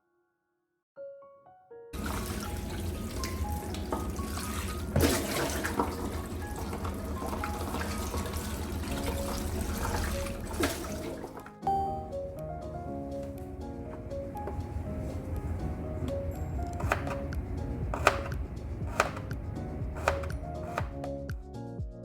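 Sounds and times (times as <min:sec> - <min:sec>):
background music: 0:01.0 - 0:22.0
tap running into a sink: 0:02.0 - 0:11.5.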